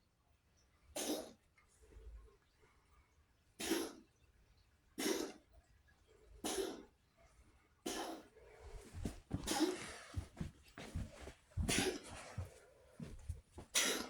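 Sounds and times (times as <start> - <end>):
cat coughing: 1.0 - 1.3, 3.6 - 4.0, 5.0 - 5.4, 6.4 - 6.9, 7.8 - 8.3, 9.4 - 10.3, 11.6 - 12.4, 13.6 - 14.0.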